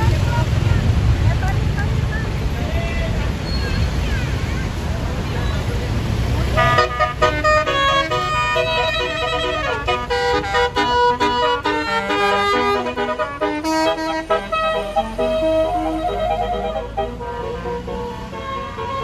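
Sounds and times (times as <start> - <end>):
bus rumbling: 0.0 - 19.0
bus horn playing a tune: 6.4 - 19.0.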